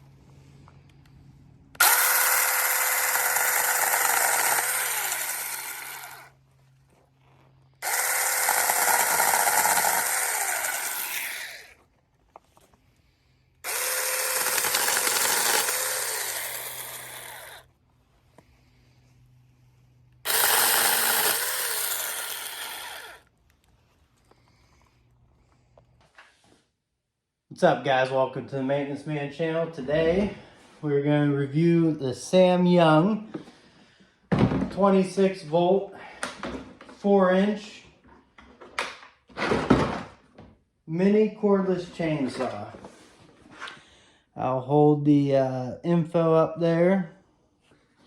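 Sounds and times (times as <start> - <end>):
electric chainsaw whining: 1.8 - 6.4, 7.8 - 11.8, 13.6 - 17.7, 20.2 - 23.3.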